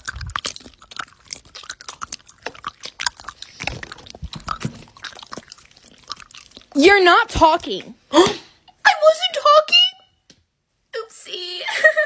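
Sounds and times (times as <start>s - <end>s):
person chewing crunchy food: 0.0s - 6.9s.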